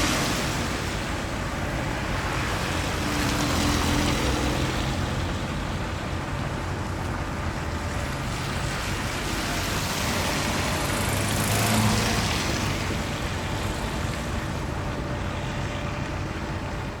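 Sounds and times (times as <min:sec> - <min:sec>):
cars driving past: 0:00.0 - 0:17.0
vehicle passing close: 0:08.6 - 0:14.1.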